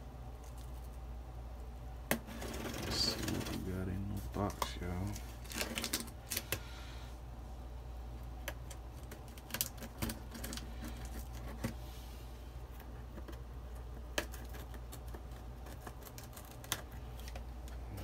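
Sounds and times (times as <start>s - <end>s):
steady low hum: 0.0s - 18.0s
box being handled and opened: 2.1s - 6.4s.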